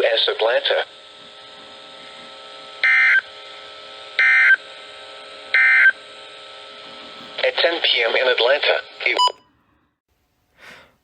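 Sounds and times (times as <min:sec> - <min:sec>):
radio hiss and hum: 0:00.0 - 0:03.8, 0:06.7 - 0:09.4
harsh digital data bursts: 0:02.8 - 0:03.3.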